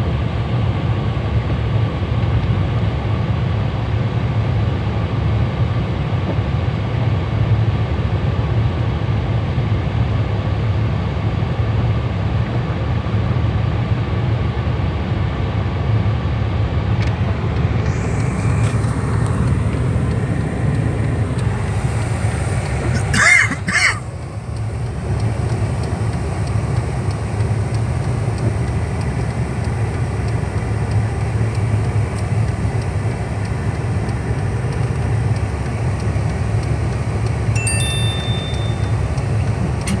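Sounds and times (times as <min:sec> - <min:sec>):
car engine rumble: 0:17.2 - 0:40.0
high squawk: 0:17.8 - 0:25.2
tyres on snowy road: 0:17.8 - 0:40.0.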